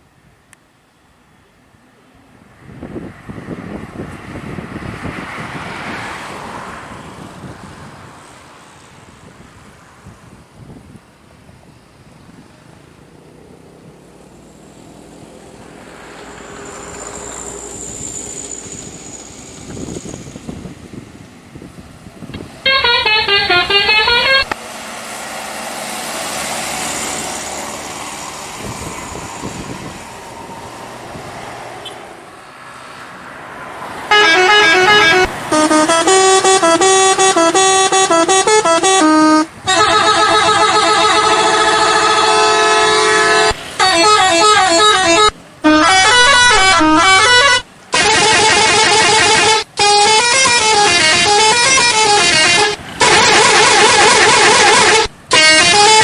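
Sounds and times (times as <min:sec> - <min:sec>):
passing road traffic: 0:00.0 - 0:56.0
musical bus horns: 0:22.4 - 0:24.6, 0:31.8 - 0:32.0, 0:34.0 - 0:56.0.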